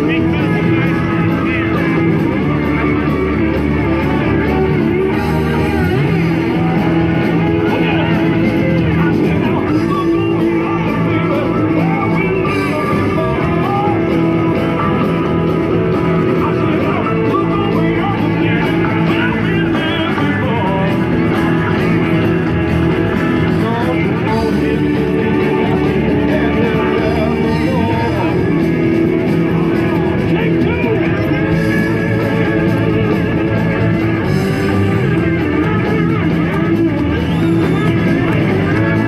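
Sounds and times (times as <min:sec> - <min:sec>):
person singing: 0:00.0 - 0:39.0
rock music with guitar: 0:00.0 - 0:39.0.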